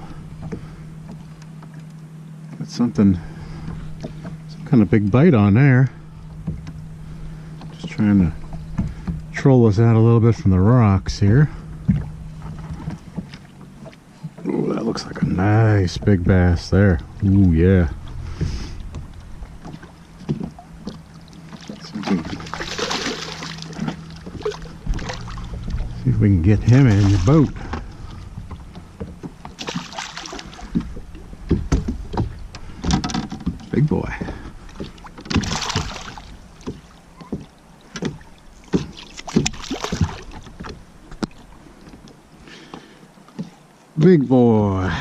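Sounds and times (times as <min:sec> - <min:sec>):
faint steady hum: 0:00.0 - 0:45.0
water splashing: 0:00.0 - 0:45.0
small knocks: 0:06.3 - 0:06.9, 0:07.6 - 0:09.3, 0:11.8 - 0:14.5, 0:18.3 - 0:21.8, 0:27.7 - 0:44.1
fish splashing at water surface: 0:18.3 - 0:25.8, 0:26.9 - 0:33.0, 0:34.8 - 0:37.0, 0:37.8 - 0:41.4
knocks against kayak hull: 0:30.6 - 0:41.4.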